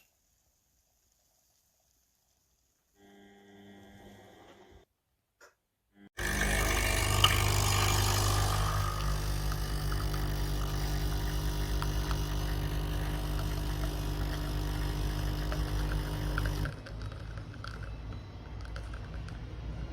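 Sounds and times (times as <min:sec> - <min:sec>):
coffee machine pump buzzing: 0:06.2 - 0:19.9.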